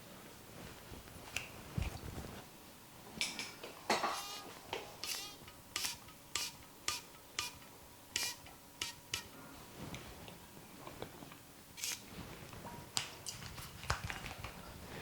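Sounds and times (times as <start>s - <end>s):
cracks and snaps from massage: 13.0s - 14.6s.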